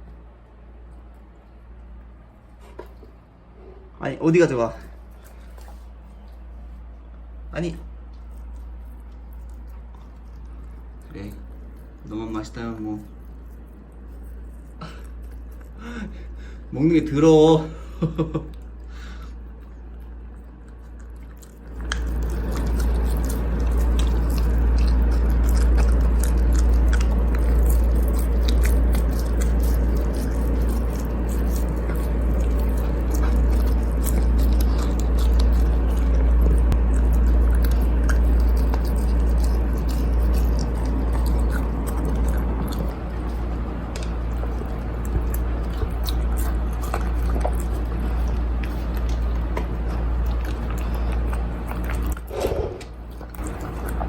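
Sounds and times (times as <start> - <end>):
dog chewing wetly: 4.4 - 17.5, 18.4 - 54.0
low rumble: 18.6 - 54.0.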